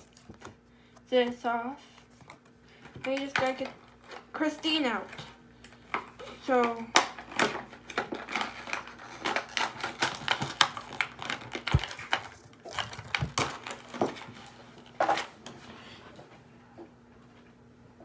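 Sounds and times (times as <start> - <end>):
packaging clicks and crinkles: 5.6 - 15.4.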